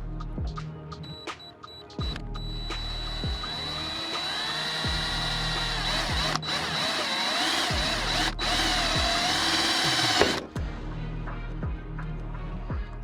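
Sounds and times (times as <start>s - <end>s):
electric drill whining through metal: 1.0s - 10.6s.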